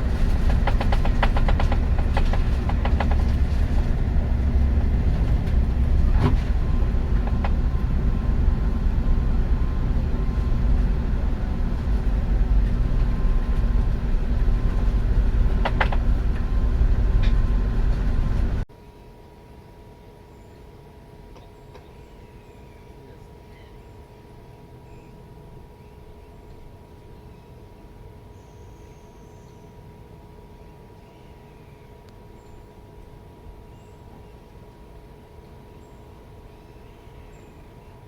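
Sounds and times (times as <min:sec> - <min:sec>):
wheel clicks over rail joints: 0:00.0 - 0:08.0, 0:10.3 - 0:18.6
train rumbling on rails: 0:00.0 - 0:18.7.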